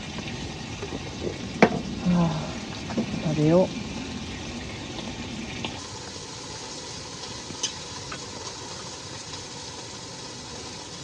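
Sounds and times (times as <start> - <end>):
meat sizzling in a tin: 0.0 - 11.0.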